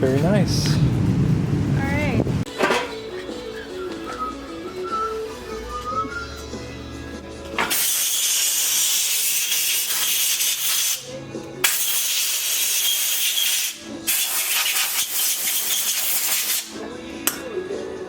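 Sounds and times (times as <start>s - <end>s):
sandpaper scrubbing metal: 7.7s - 11.1s, 11.7s - 16.7s.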